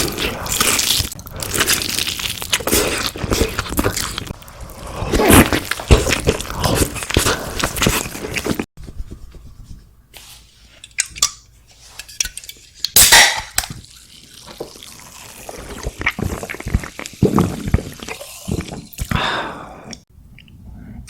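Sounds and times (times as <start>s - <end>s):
loud food crunch: 0.0s - 8.7s.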